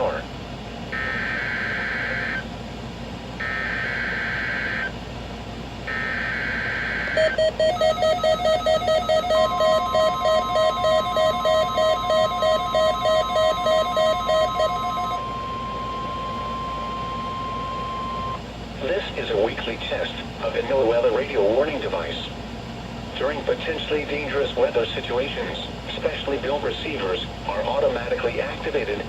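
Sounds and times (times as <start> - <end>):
digital data screeching bursts: 1.0 - 2.4, 3.4 - 4.9, 5.9 - 8.2
steady high alarm tone: 1.0 - 2.5, 3.4 - 5.0, 5.9 - 18.4
pulsing buzzy electronic beep: 5.9 - 18.4.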